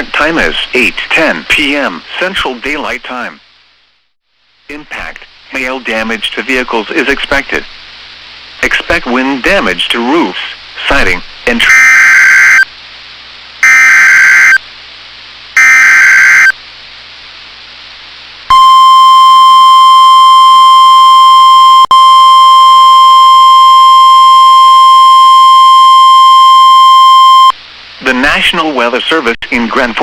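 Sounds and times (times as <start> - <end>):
screechy digital header bursts: 11.6 - 12.7, 13.6 - 14.6, 15.6 - 16.6
steady warning alarm tone: 11.6 - 12.7, 13.6 - 14.6, 15.6 - 16.6.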